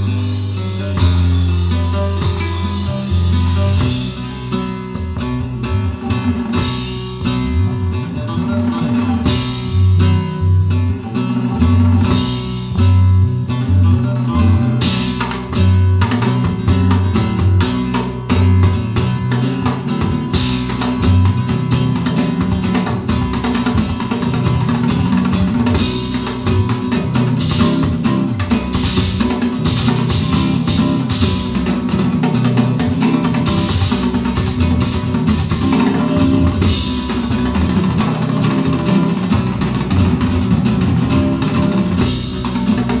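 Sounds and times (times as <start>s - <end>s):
guitar-led music over loudspeakers: 0.0s - 43.0s.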